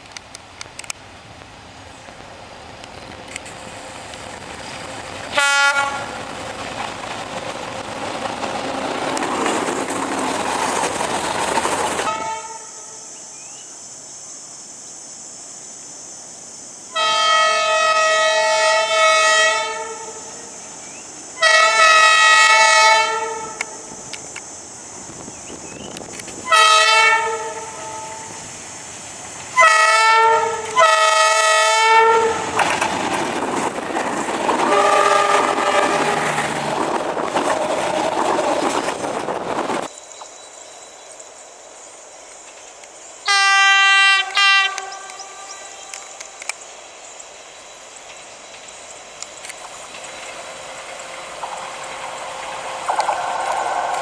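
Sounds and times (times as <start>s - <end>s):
train wheel and rail noise: 0.0s - 54.0s
diesel locomotive horn blasts: 5.3s - 6.2s, 12.1s - 13.1s, 16.9s - 20.4s, 21.4s - 23.8s, 26.4s - 28.4s, 29.6s - 32.6s, 34.6s - 36.4s, 43.3s - 46.0s.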